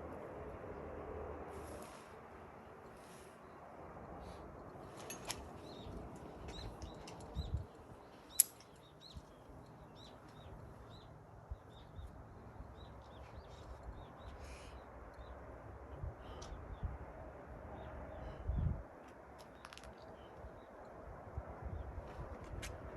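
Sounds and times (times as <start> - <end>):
low outdoor rumble: 0.0 - 19.0
small birds chirping: 4.8 - 15.4.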